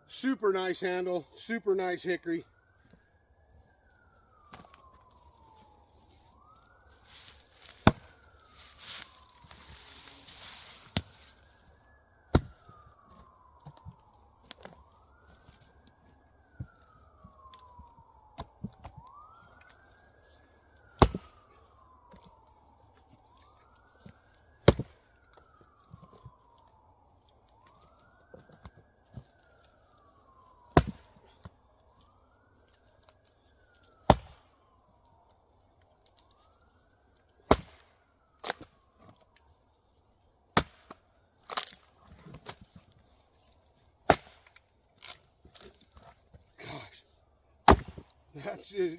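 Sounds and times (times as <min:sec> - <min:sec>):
siren wailing: 0:00.0 - 0:48.9
axe chopping firewood: 0:04.5 - 0:04.9, 0:07.6 - 0:08.2, 0:10.4 - 0:11.3, 0:12.3 - 0:13.9, 0:18.4 - 0:19.0, 0:21.0 - 0:21.4, 0:24.0 - 0:25.0, 0:30.7 - 0:31.5, 0:34.0 - 0:34.5, 0:37.4 - 0:38.7, 0:40.5 - 0:42.7, 0:44.0 - 0:46.8, 0:47.6 - 0:48.2.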